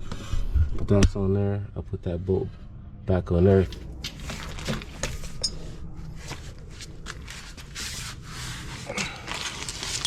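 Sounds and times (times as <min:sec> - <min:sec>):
hands rubbing and scraping: 0:06.2 - 0:10.0.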